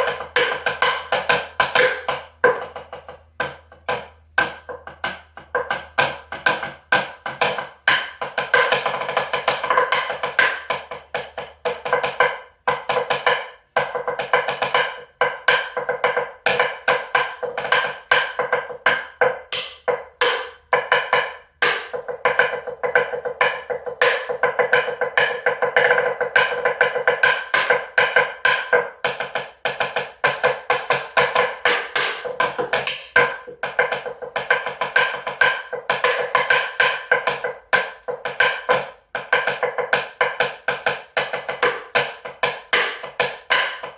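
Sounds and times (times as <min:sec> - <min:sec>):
fast percussive strikes: 0:00.0 - 0:43.9.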